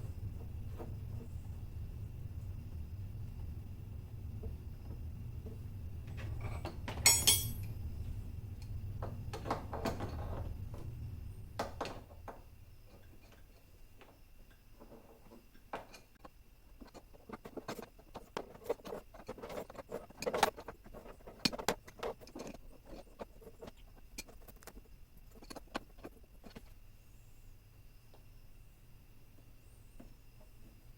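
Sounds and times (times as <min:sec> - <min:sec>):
hand tools clicking and knocking: 0:06.2 - 0:07.7
sharp metallic clatter: 0:07.0 - 0:07.7.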